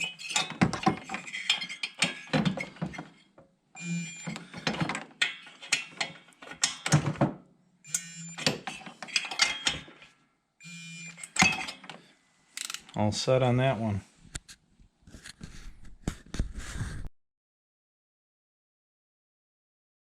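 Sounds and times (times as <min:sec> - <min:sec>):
torque wrench beep and buzz: 0:03.8 - 0:04.5, 0:07.8 - 0:08.7, 0:10.6 - 0:11.4.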